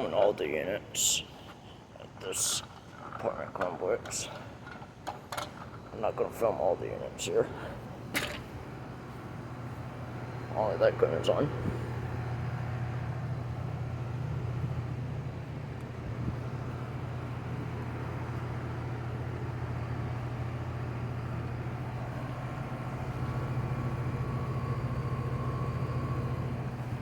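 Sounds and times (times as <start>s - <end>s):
air conditioner unit humming: 0.0s - 27.0s
faint high whine: 5.9s - 27.0s.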